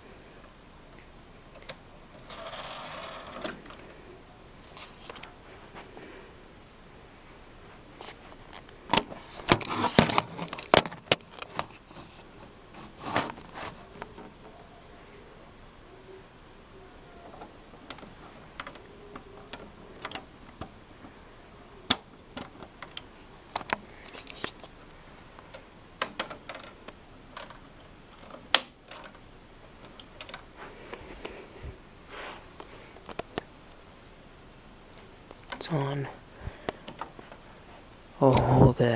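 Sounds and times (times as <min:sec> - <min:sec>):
plastic clicks and scrapes: 0:08.0 - 0:14.4, 0:21.9 - 0:24.7, 0:25.4 - 0:29.2, 0:29.8 - 0:30.5
sharp plastic snaps: 0:25.4 - 0:29.2.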